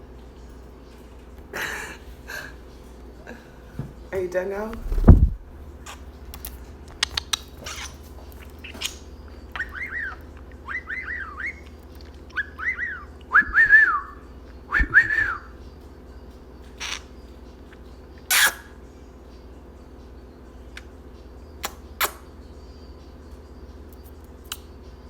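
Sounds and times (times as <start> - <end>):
budgerigar clicks: 6.4 - 9.0
budgerigar chirping: 8.6 - 11.6.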